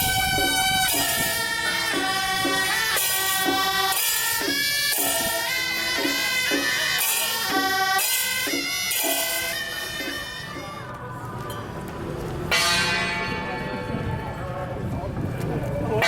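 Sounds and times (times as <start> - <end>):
shrill double-reed horn melody: 0.0 - 10.8
steady drum beat: 0.0 - 10.8.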